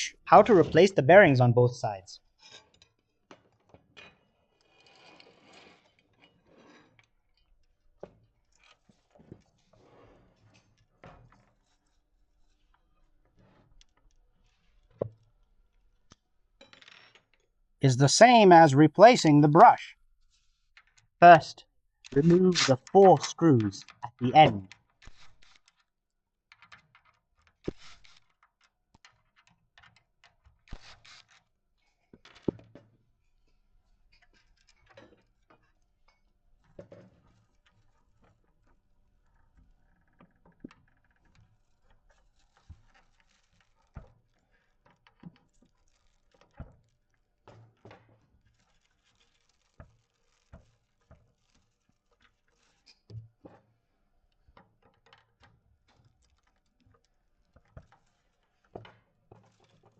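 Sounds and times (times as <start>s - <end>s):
clicks and scrapes of hand tools: 4.0s - 7.5s.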